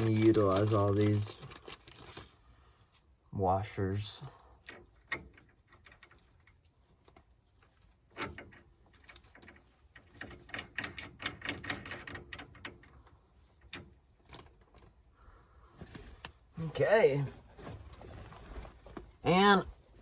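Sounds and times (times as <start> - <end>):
metal washers and bolt clinking: 0.0 - 15.0.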